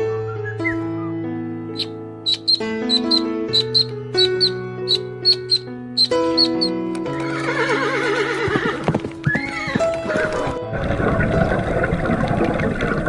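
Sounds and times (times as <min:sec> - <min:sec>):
background music sustained notes: 0:00.0 - 0:13.0
horse whinnying: 0:07.1 - 0:10.2.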